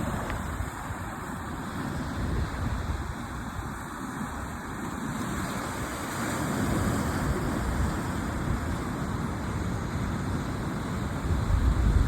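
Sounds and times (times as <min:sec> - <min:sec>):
sea surf washing: 0:00.0 - 0:12.0
wind buffeting microphone: 0:00.0 - 0:12.0.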